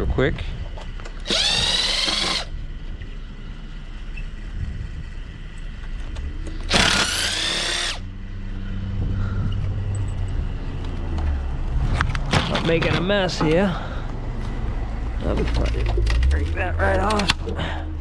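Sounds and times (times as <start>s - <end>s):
low hum: 0.0s - 12.4s
power drill spinning: 1.2s - 2.6s, 6.4s - 8.1s.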